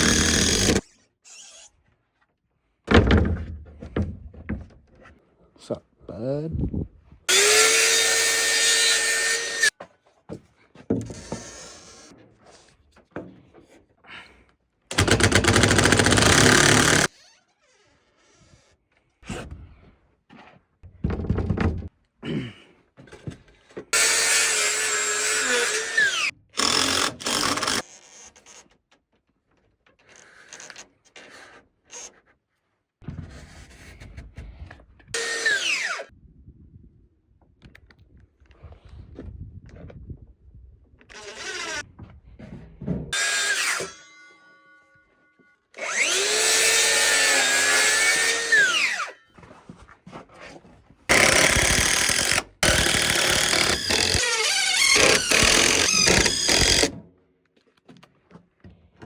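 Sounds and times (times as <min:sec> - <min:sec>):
power drill motor whine: 0:00.0 - 0:01.4, 0:07.3 - 0:09.7, 0:14.9 - 0:17.1, 0:45.8 - 0:49.1, 0:51.1 - 0:56.9.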